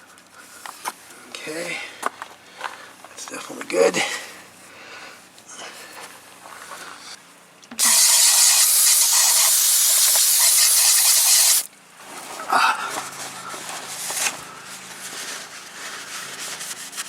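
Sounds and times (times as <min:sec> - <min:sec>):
aerosol can spraying hiss: 0:07.8 - 0:11.7.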